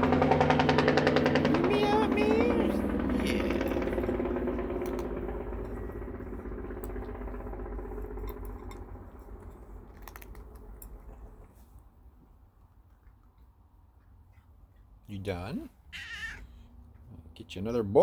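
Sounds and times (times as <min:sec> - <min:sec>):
engine low drone: 0:00.0 - 0:13.0
cat eating dry kibble: 0:00.1 - 0:15.4.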